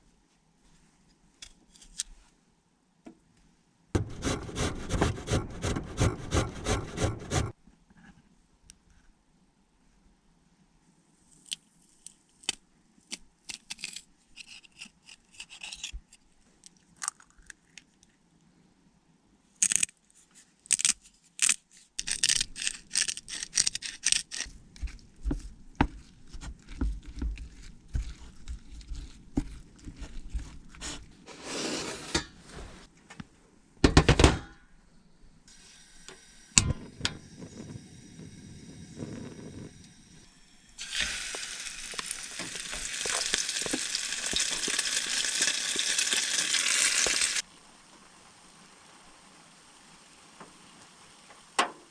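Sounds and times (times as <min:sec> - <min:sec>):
steady hiss: 0:34.8 - 0:51.9.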